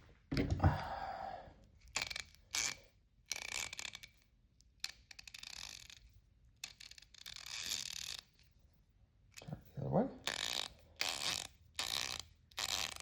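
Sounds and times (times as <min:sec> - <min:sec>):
ratchet pawl clicking: 0:02.0 - 0:04.2, 0:04.8 - 0:06.0, 0:06.6 - 0:08.3, 0:10.3 - 0:13.0.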